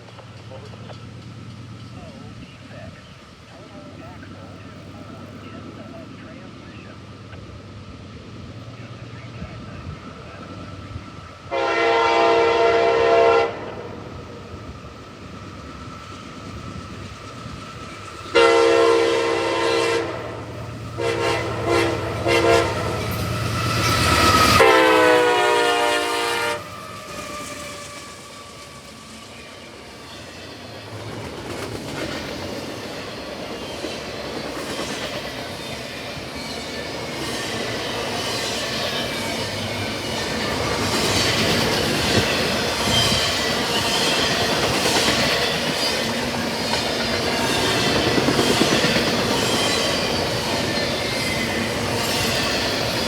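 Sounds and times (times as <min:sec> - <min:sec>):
locomotive horn chord: 0:11.5 - 0:14.0, 0:18.3 - 0:23.2, 0:24.5 - 0:26.8.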